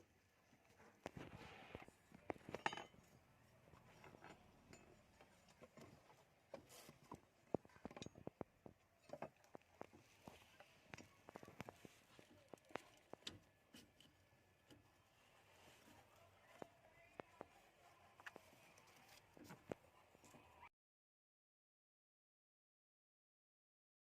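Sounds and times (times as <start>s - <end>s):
clicks and clinks of small parts: 2.3s - 3.1s.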